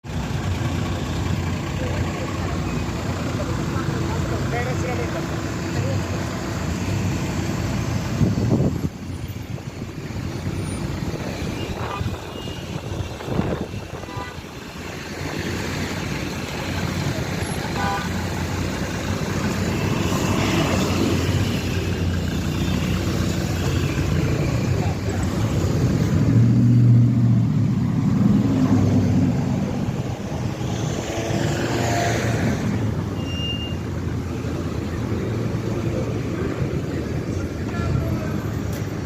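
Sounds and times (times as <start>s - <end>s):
cars passing: 0.0s - 39.0s
short high beeps: 33.2s - 33.8s.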